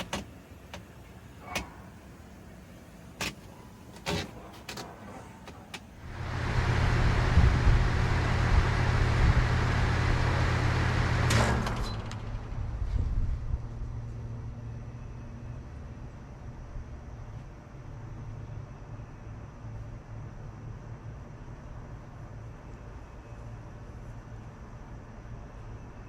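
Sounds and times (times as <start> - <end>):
heat pump humming: 0.0 - 13.6
shutoff click: 5.5 - 12.6.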